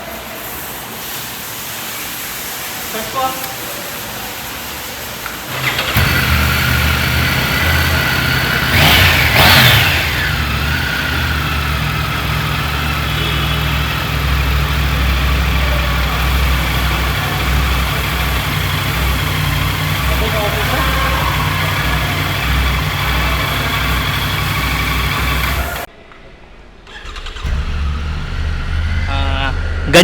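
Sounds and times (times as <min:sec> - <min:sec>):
engine idling: 0:05.5 - 0:25.9, 0:26.9 - 0:30.0
engine revving: 0:05.5 - 0:25.9, 0:26.9 - 0:30.0
motorcycle engine starting: 0:05.5 - 0:25.9, 0:26.8 - 0:30.0.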